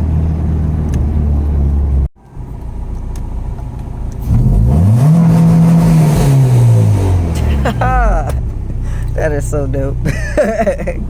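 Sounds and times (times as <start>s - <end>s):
car engine revving: 3.2s - 11.0s.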